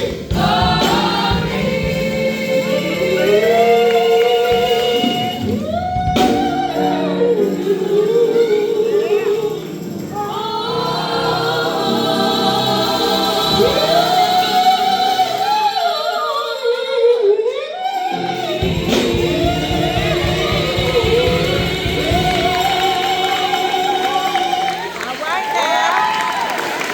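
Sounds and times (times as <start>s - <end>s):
choir singing: 0.0s - 26.9s.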